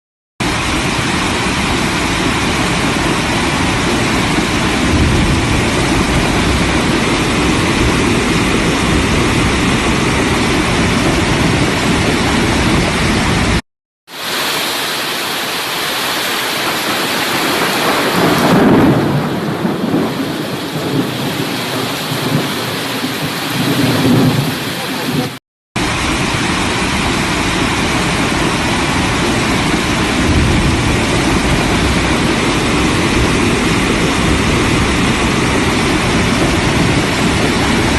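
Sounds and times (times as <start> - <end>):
heavy rain pouring: 0.4 - 37.9
deep low rumble: 4.3 - 13.1.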